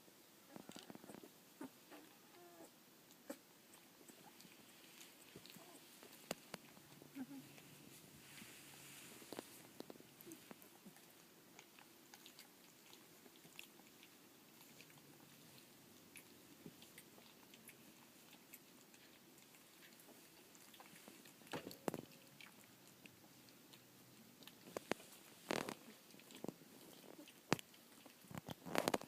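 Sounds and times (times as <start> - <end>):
puppies mouth smacks: 3.1 - 7.7, 16.0 - 29.0.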